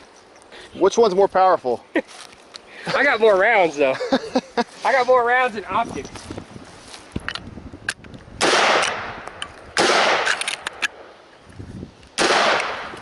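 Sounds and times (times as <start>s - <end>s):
gunshots: 8.4s - 9.2s, 9.8s - 10.8s, 12.2s - 13.0s.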